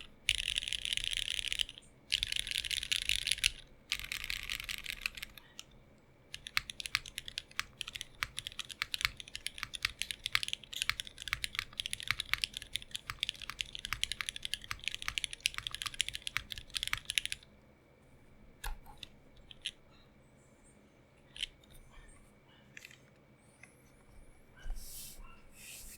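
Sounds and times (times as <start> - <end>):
mechanical keyboard typing: 0.0 - 17.5.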